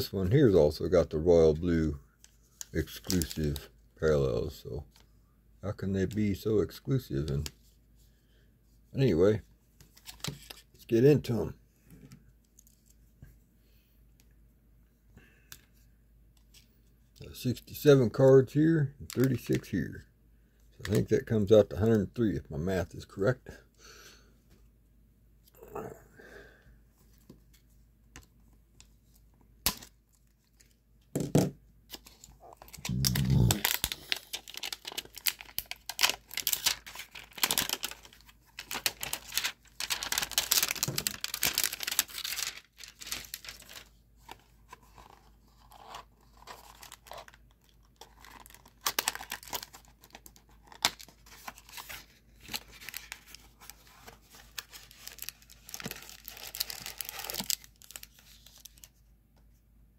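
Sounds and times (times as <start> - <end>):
plastic wrapping tearing and crinkling: 2.8 - 3.6, 31.9 - 58.9.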